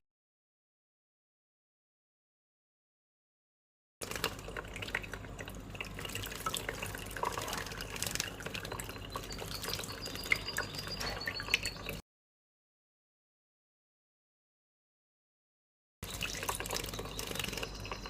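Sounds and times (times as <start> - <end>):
water trickling and dripping: 4.0 - 12.0, 16.0 - 18.0.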